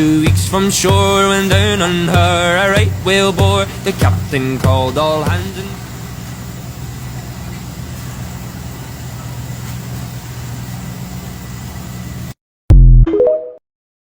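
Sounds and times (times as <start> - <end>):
man singing: 0.0 - 5.8
engine humming: 0.0 - 11.1.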